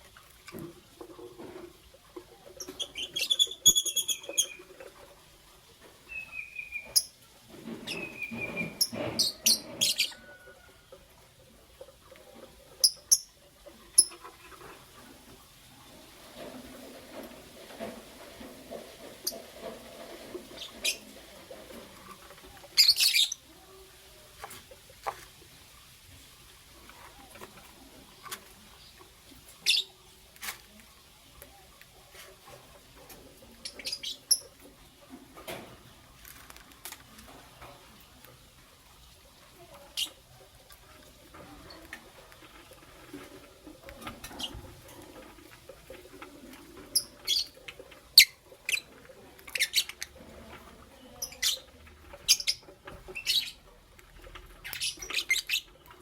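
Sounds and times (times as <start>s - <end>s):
birds chirping: 2.3s - 4.9s, 6.0s - 10.3s, 20.5s - 23.8s, 26.8s - 32.1s, 33.1s - 34.9s, 46.7s - 53.8s, 54.4s - 56.0s.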